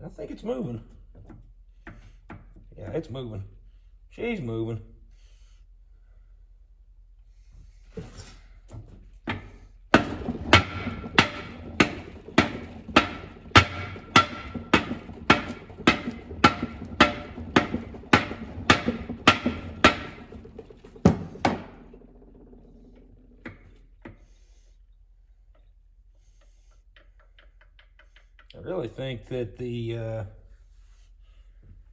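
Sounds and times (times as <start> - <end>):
hammer striking steel: 10.0 - 21.9.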